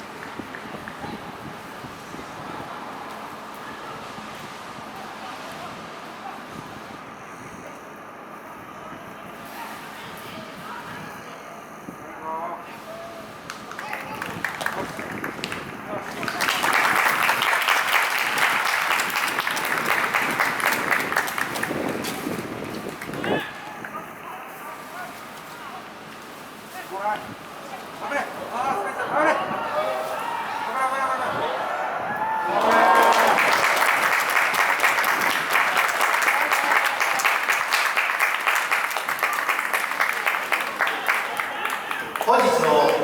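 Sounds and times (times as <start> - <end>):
stadium crowd applauding: 0.0 - 1.8, 13.3 - 24.1, 29.8 - 43.0.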